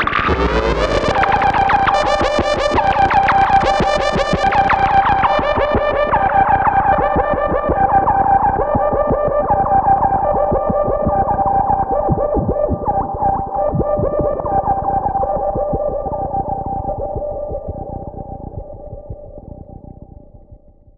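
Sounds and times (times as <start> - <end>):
repeating falling echo blips: 0.0 - 6.3
synthesizer drone: 0.0 - 20.5.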